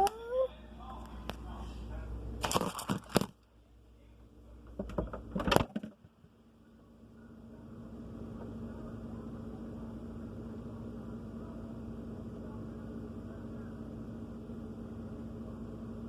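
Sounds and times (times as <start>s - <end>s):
refrigerator humming: 0.0s - 16.0s.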